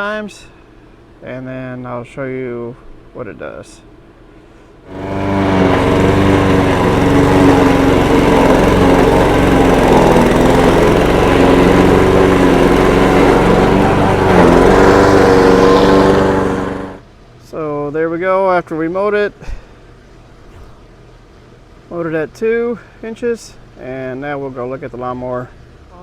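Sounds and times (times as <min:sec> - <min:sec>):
lawnmower engine running: 0:04.9 - 0:17.0.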